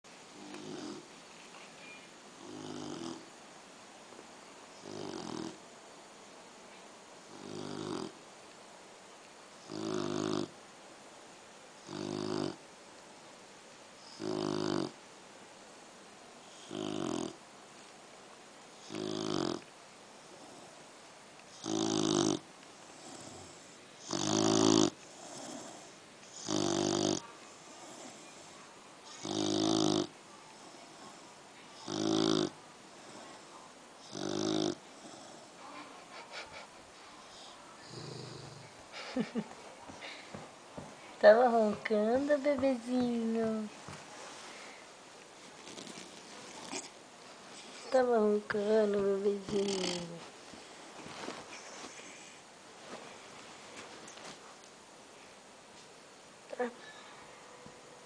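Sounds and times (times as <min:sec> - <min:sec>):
puppy snoring: 0:00.4 - 0:01.1, 0:02.4 - 0:03.3, 0:04.8 - 0:05.6, 0:07.2 - 0:08.2, 0:09.6 - 0:10.6, 0:11.8 - 0:12.6, 0:14.0 - 0:15.0, 0:16.4 - 0:17.4, 0:18.8 - 0:19.7, 0:21.5 - 0:28.4, 0:29.1 - 0:35.7, 0:37.2 - 0:38.8, 0:45.4 - 0:50.3, 0:51.1 - 0:52.5.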